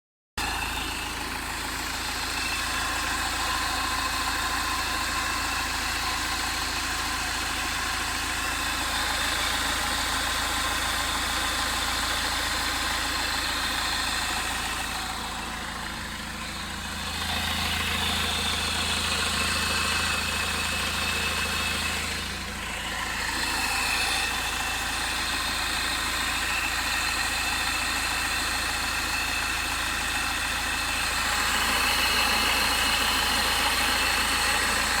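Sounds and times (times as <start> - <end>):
diesel engine idling: 0.4 - 35.0
deep hum: 13.5 - 26.6.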